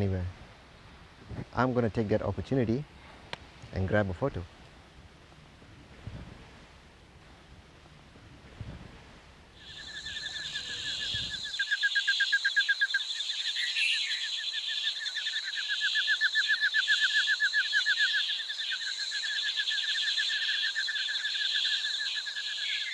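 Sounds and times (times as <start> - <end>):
insects buzzing and trilling: 9.5 - 22.9
rapid pulsing insect trill: 9.6 - 22.9.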